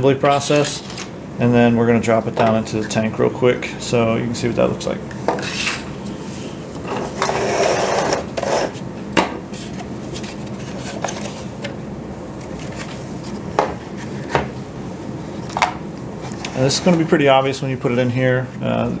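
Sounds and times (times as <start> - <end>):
plastic scraping rub: 5.3 - 8.8.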